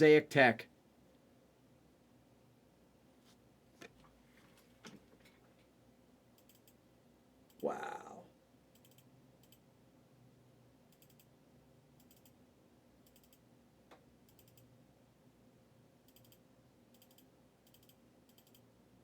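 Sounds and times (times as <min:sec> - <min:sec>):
faint high ticks: 0:06.4 - 0:06.8, 0:08.7 - 0:09.6, 0:10.9 - 0:11.3, 0:12.0 - 0:12.4, 0:13.0 - 0:14.7, 0:16.1 - 0:18.7.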